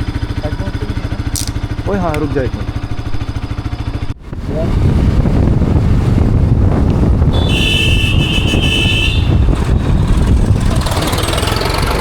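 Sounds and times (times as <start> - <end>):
road traffic rumble: 0.0 - 12.0
vehicle horn beep: 7.3 - 9.5.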